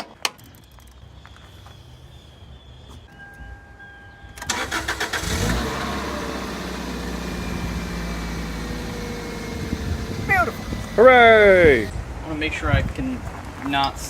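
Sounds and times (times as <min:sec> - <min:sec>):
car engine starting and idling: 0:04.3 - 0:11.9.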